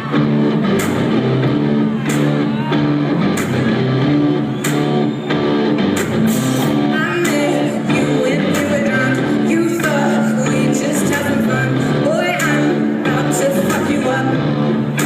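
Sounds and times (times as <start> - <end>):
live rock band playing: 0.0 - 15.0
woman singing: 6.8 - 15.0.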